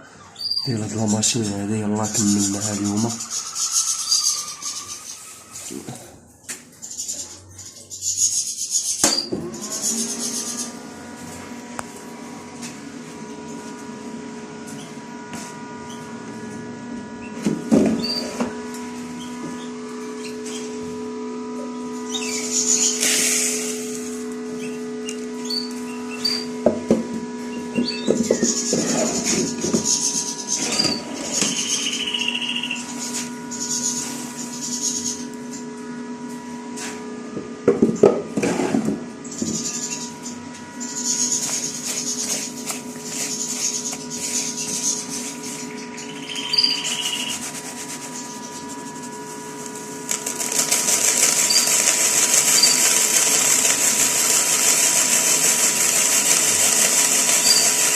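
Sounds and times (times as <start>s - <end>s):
small electric motor humming: 0.6s - 6.0s, 6.9s - 14.1s, 14.7s - 38.5s, 39.2s - 57.9s
feed hissing and rattling in sieve: 22.5s - 24.3s, 41.2s - 45.6s, 46.7s - 49.5s, 50.1s - 57.9s.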